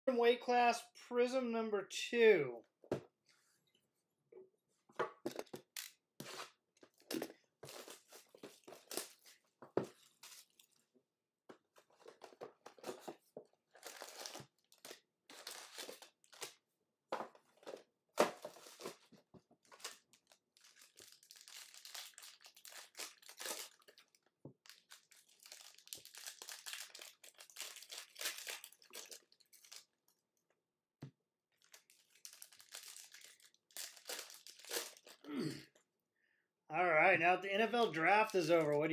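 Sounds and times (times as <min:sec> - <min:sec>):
plastic wrapping tearing and crinkling: 0:07.7 - 0:09.4, 0:13.8 - 0:16.6, 0:19.6 - 0:30.0, 0:31.6 - 0:35.2.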